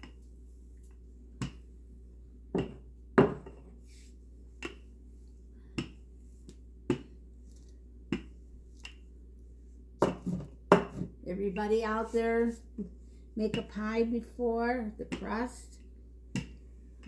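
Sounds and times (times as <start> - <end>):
steady low hum: 0.0 - 17.0
dough knocking on kitchen counter: 2.5 - 3.6, 10.0 - 11.1.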